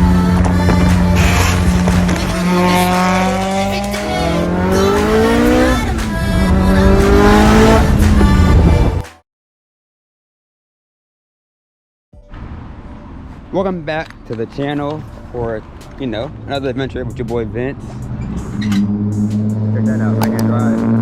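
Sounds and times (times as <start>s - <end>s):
car engine accelerating hard: 0.0s - 9.0s, 16.3s - 21.0s.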